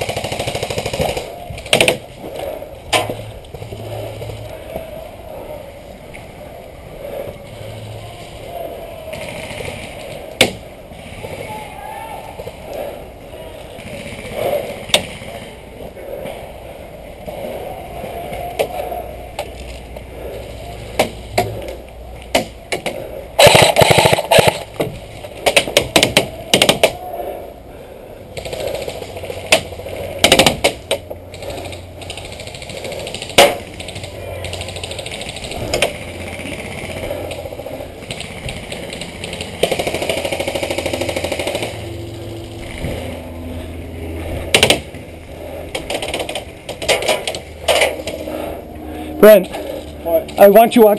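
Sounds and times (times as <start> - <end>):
airsoft gun shots: 23.4 - 24.6.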